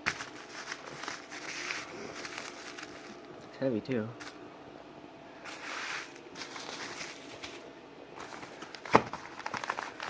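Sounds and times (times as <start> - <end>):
packaging rustling and crinkling: 0.0 - 3.3, 5.5 - 10.0.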